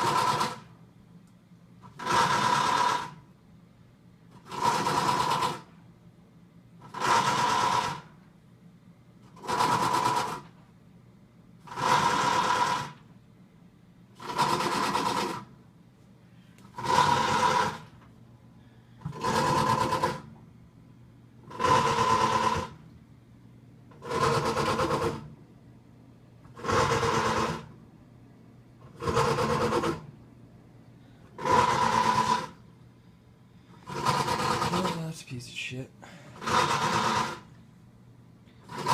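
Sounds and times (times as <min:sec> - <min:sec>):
washing machine grinding: 0:00.0 - 0:00.7, 0:01.8 - 0:03.3, 0:04.3 - 0:05.8, 0:06.8 - 0:08.2, 0:09.2 - 0:10.6, 0:11.6 - 0:13.1, 0:14.2 - 0:15.6, 0:16.6 - 0:18.1, 0:19.0 - 0:20.4, 0:21.4 - 0:22.8, 0:23.9 - 0:25.4, 0:26.4 - 0:27.8, 0:28.8 - 0:30.1, 0:31.3 - 0:32.7, 0:33.7 - 0:35.2, 0:36.4 - 0:37.6, 0:38.5 - 0:38.9
person talking: 0:34.7 - 0:36.2.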